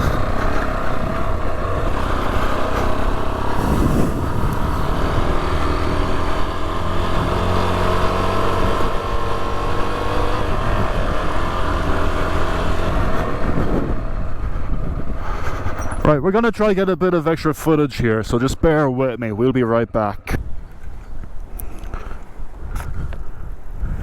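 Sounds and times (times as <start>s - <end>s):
motorcycle engine revving: 0.0s - 16.2s
brief rush of noise: 3.5s - 4.8s.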